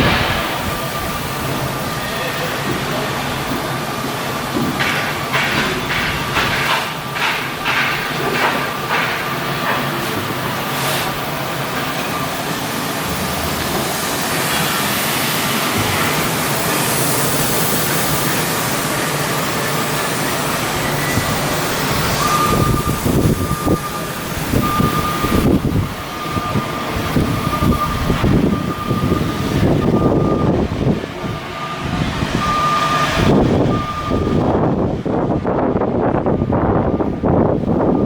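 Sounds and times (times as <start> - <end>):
high whine: 0.0 - 38.0
loud machinery noise: 0.0 - 38.0
irregular rattling and knocking: 4.5 - 10.4.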